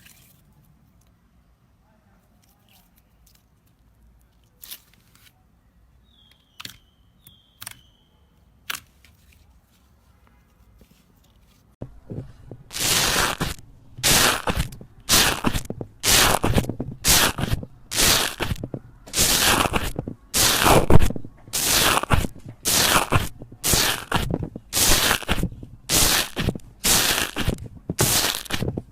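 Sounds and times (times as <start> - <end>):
slime crackling presses: 12.1 - 28.9
slime squeaky pops: 12.7 - 28.7.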